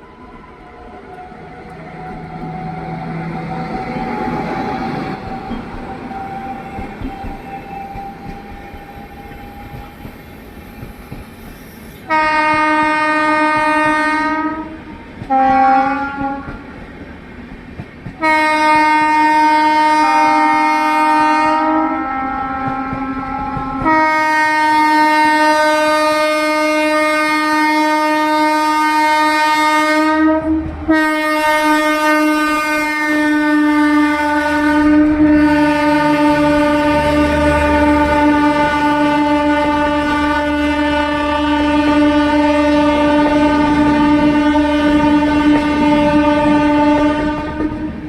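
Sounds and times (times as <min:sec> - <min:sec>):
train rumbling on rails: 0:00.0 - 0:48.0
locomotive horn blasts: 0:12.1 - 0:16.6, 0:18.2 - 0:48.0.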